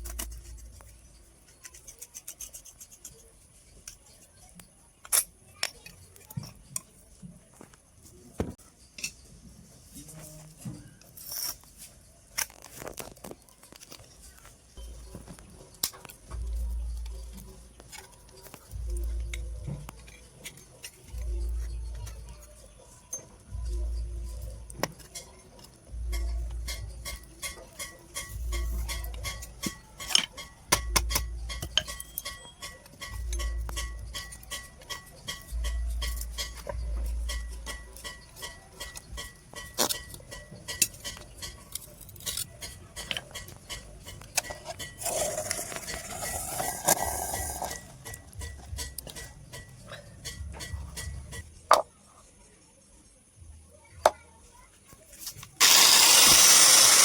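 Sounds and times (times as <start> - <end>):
metal clinking on metal: 14.8 - 51.5.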